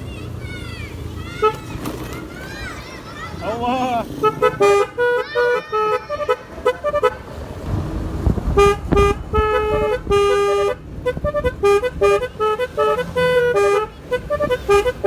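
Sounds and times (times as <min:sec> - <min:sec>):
horn tooting a tune: 0:01.3 - 0:01.8, 0:04.0 - 0:15.0
low rumble: 0:07.6 - 0:11.5.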